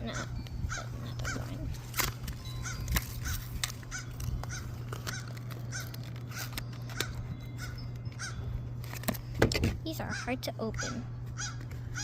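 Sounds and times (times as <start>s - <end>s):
toy packaging crinkling: 1.7s - 7.3s.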